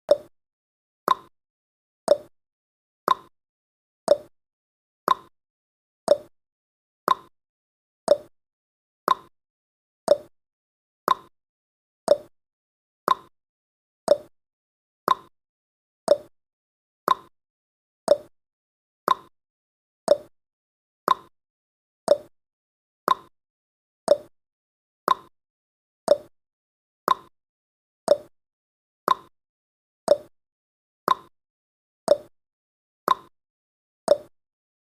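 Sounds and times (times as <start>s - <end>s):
clock ticking tick-tock: 0.1s - 0.3s, 1.1s - 1.3s, 2.1s - 2.3s, 3.1s - 3.3s, 4.1s - 4.3s, 5.1s - 5.3s, 6.1s - 6.3s, 7.1s - 7.3s, 8.1s - 8.3s, 9.1s - 9.3s, 10.1s - 10.3s, 11.1s - 11.3s, 12.1s - 12.3s, 13.1s - 13.3s, 14.1s - 14.3s, 15.1s - 15.3s, 16.1s - 16.3s, 17.1s - 17.3s, 18.1s - 18.3s, 19.1s - 19.3s, 20.1s - 20.3s, 21.1s - 21.3s, 22.1s - 22.3s, 23.1s - 23.3s, 24.1s - 24.3s, 25.1s - 25.3s, 26.1s - 26.3s, 27.1s - 27.3s, 28.1s - 28.3s, 29.1s - 29.3s, 30.1s - 30.3s, 31.1s - 31.3s, 32.1s - 32.3s, 33.1s - 33.3s, 34.1s - 34.3s.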